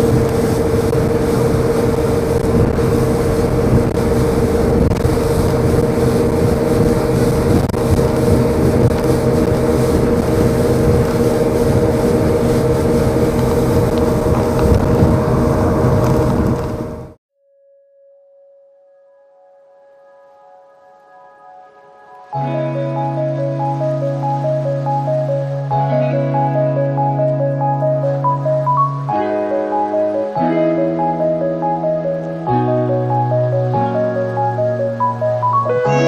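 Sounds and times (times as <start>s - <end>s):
rushing water: 0.0s - 17.2s, 22.3s - 36.0s
speedboat engine drone: 0.0s - 17.2s, 21.5s - 36.0s
wind noise: 0.0s - 17.2s.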